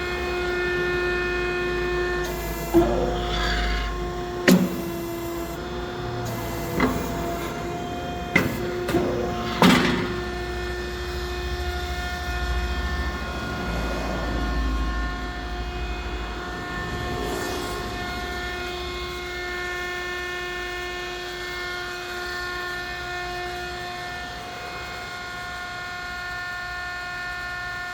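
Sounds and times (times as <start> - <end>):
vegetable dicing machine motor whine: 1.8 - 11.0.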